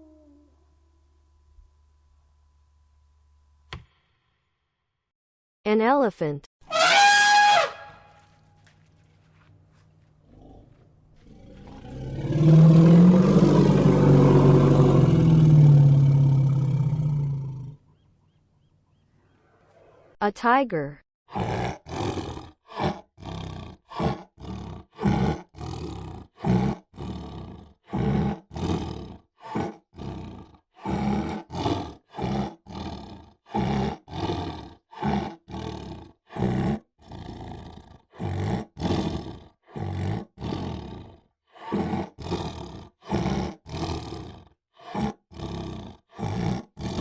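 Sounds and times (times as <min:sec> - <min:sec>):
tiger roaring and growling: 0:06.7 - 0:08.1, 0:10.2 - 0:17.8, 0:21.3 - 0:47.0.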